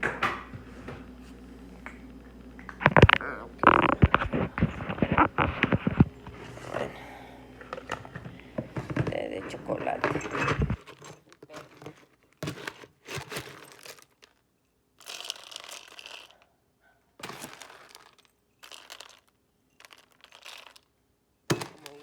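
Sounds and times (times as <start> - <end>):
packaging crinkling: 2.8 - 6.8, 9.4 - 16.4, 17.2 - 20.9.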